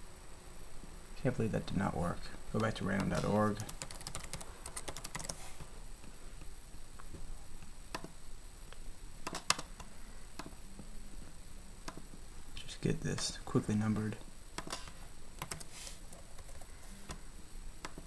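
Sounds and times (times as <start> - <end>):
computer keyboard typing: 2.6 - 5.4, 9.2 - 10.5, 14.6 - 16.9
keyboard clicks: 2.6 - 5.4, 7.9 - 8.1, 9.2 - 10.5, 14.6 - 17.2.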